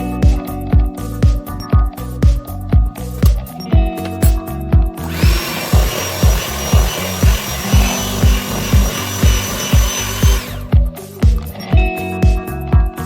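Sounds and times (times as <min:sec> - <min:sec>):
background music with beat: 0:00.0 - 0:13.0
electric mixer motor whining: 0:05.0 - 0:10.8.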